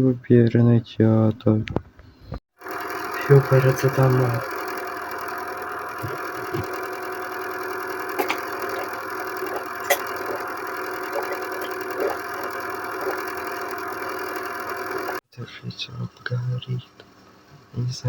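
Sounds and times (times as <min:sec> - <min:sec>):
steady mechanical hum: 0:01.7 - 0:18.0.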